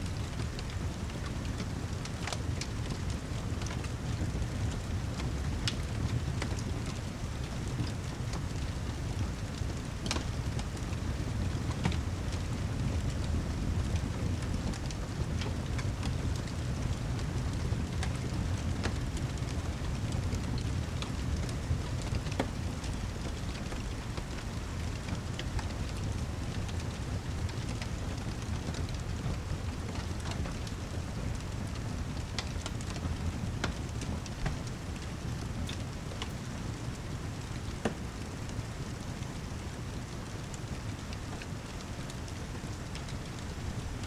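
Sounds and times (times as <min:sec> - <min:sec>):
fireplace fire crackling: 0:00.0 - 0:44.0
heavy rain: 0:00.0 - 0:44.0.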